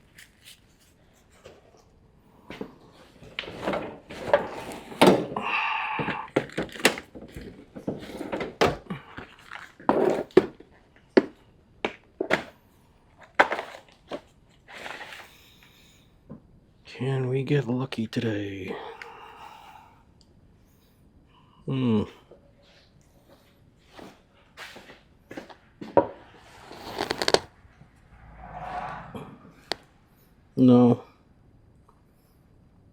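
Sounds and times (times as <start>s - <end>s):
scraping and rustling: 23.8s - 29.8s.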